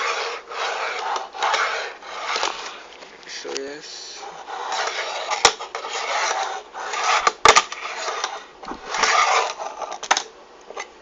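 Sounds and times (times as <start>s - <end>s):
wooden fingerboard scraping: 0.0s - 2.8s, 4.2s - 10.0s.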